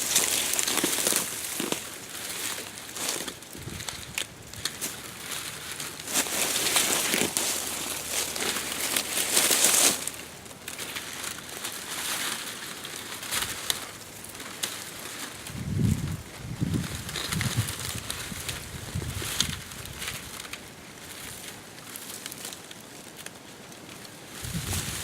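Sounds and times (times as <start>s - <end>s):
dry plants crunching and rustling: 0.0s - 25.0s.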